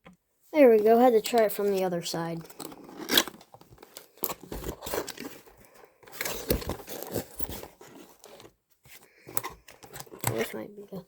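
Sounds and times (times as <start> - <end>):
cardboard crinkling and tearing: 1.6 - 10.6.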